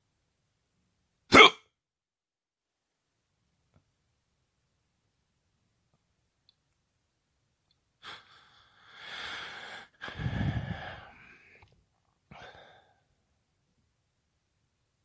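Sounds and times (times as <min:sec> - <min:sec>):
person hiccuping: 0:01.3 - 0:01.6
loud breathy breath: 0:08.0 - 0:11.7, 0:12.3 - 0:13.1.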